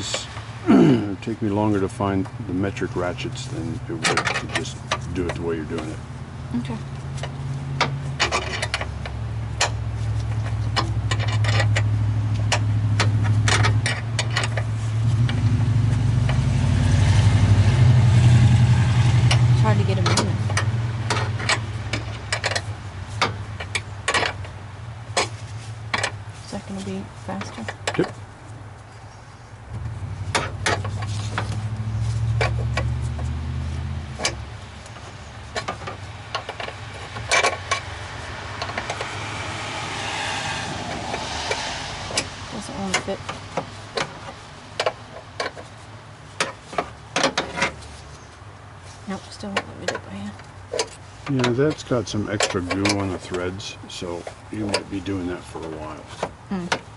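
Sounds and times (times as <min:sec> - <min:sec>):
engine running hum: 0:00.0 - 0:56.9
low motor hum: 0:29.6 - 0:44.7.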